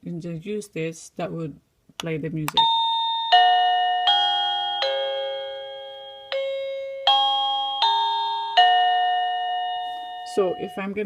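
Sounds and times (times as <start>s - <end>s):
doorbell chime melody: 2.6s - 11.0s.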